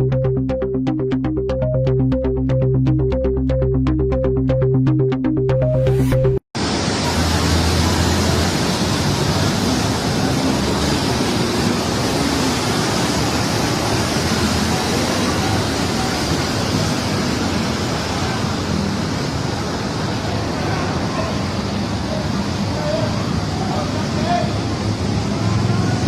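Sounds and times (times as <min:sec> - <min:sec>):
rushing water roar: 0:06.6 - 0:26.0.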